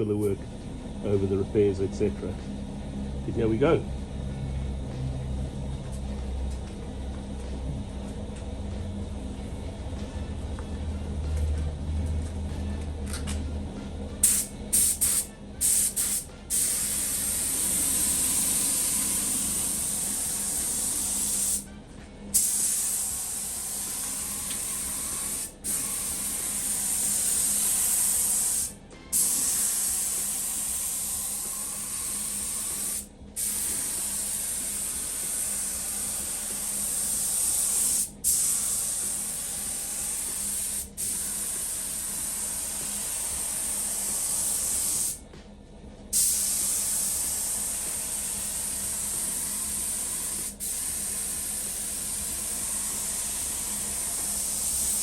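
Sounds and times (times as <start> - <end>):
spray paint hissing: 14.2 - 21.7, 22.3 - 45.2, 46.1 - 55.0.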